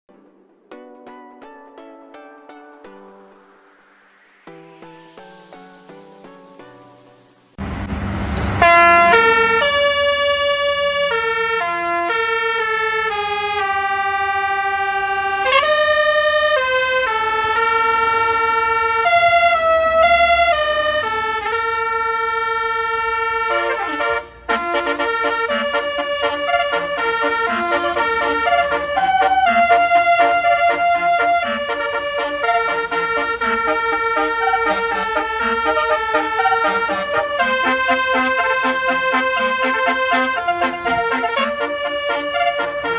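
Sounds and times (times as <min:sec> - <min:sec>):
burst of noise: 0:03.4 - 0:10.8
bus horn playing melody: 0:07.6 - 0:42.9.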